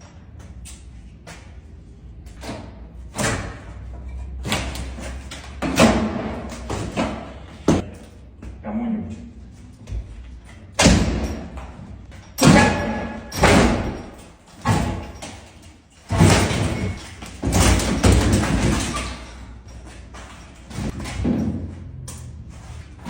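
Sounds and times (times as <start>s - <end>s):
heavy bangs on door: 10.8s - 11.6s, 12.4s - 15.2s, 16.1s - 19.0s.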